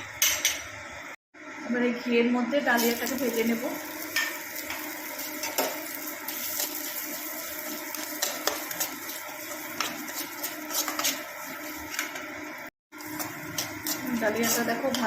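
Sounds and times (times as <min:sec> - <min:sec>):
grain sizzling in a pan: 0:02.8 - 0:15.0
spoon scraping a pan: 0:07.7 - 0:12.2, 0:13.0 - 0:15.0.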